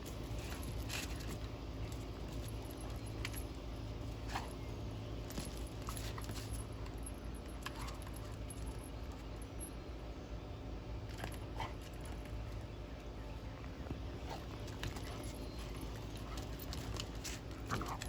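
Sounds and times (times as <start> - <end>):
dog tags jingling: 0.0 - 9.8, 14.3 - 18.0
low hum: 0.0 - 18.0.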